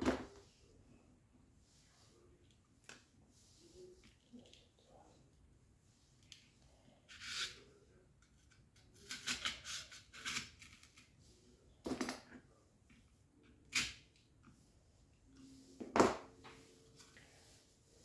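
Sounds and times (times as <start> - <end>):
small clicks and scrapes: 6.2 - 11.2.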